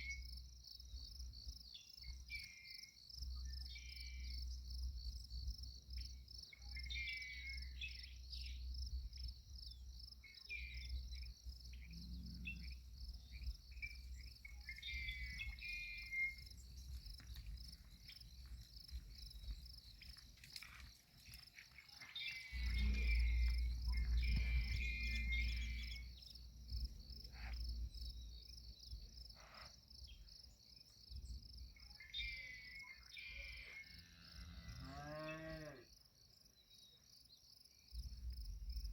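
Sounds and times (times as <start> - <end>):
crickets chirping: 0.0 - 38.9
low rumble: 22.6 - 28.8.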